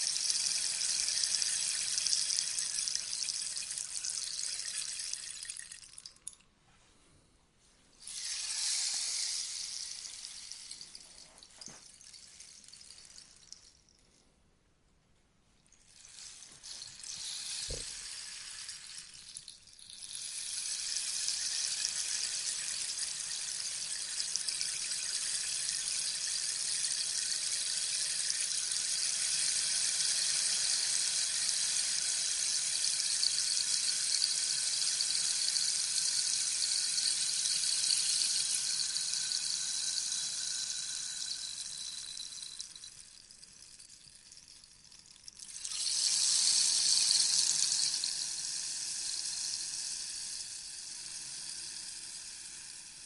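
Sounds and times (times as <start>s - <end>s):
rainstick pattering: 37.3s - 48.2s.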